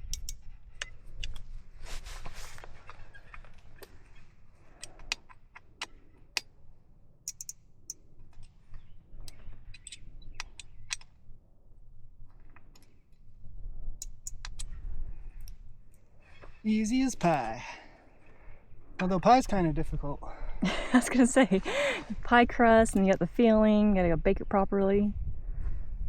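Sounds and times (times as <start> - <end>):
clicks and metallic taps: 0.1 - 1.4, 7.3 - 7.6.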